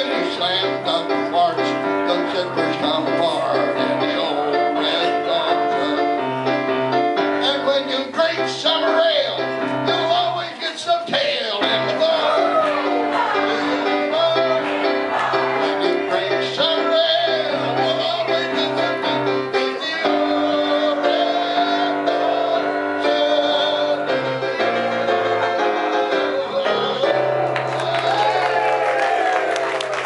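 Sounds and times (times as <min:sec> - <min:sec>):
people singing: 0:00.0 - 0:06.4, 0:07.4 - 0:28.3
live piano music: 0:00.0 - 0:30.0.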